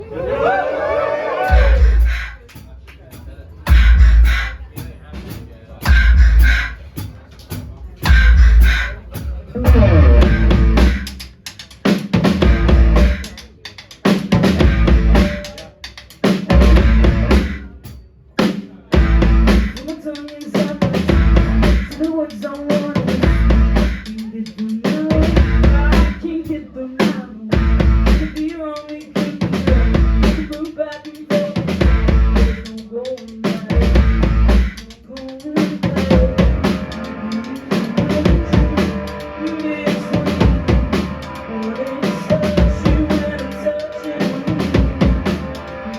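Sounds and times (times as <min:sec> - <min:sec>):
live rock band playing: 0:09.6 - 0:11.2, 0:11.8 - 0:13.4, 0:14.0 - 0:17.6, 0:19.0 - 0:26.3, 0:27.5 - 0:28.5, 0:29.2 - 0:30.6, 0:31.3 - 0:32.8, 0:33.4 - 0:34.9, 0:35.5 - 0:45.9
heavy bass drum hits: 0:09.7 - 0:11.0, 0:12.3 - 0:13.2, 0:14.4 - 0:15.4, 0:16.5 - 0:17.5, 0:19.0 - 0:19.7, 0:21.1 - 0:21.9, 0:27.6 - 0:28.2, 0:31.8 - 0:32.6, 0:33.8 - 0:34.8, 0:40.3 - 0:41.1.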